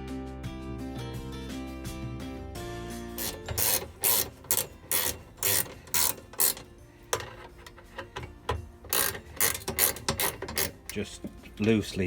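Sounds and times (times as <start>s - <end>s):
ratchet spanner clicking: 3.2s - 11.1s.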